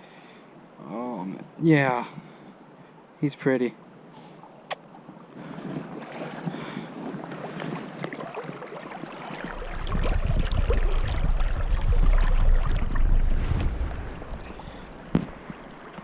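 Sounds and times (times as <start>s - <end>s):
water splashing and trickling: 4.4s - 16.0s
wind buffeting microphone: 9.4s - 16.0s.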